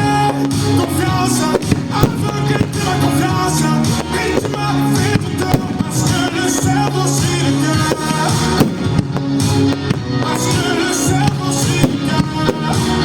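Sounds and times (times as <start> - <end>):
pop-rock music with singing: 0.0 - 13.0.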